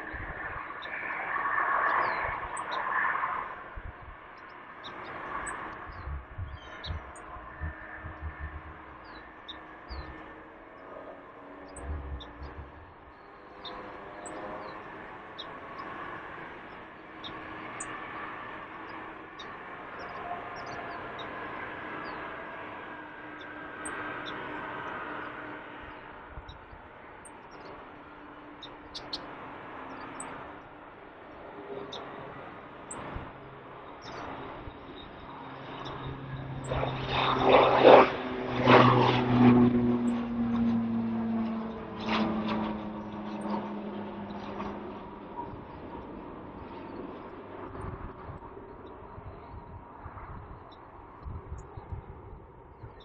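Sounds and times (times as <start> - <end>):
turboprop engines droning: 0.0 - 53.0
birds chirping faintly: 4.2 - 36.8.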